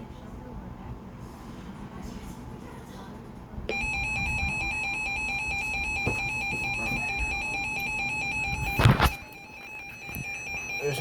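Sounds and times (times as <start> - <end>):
shrill electronic alarm tone: 3.7 - 11.0.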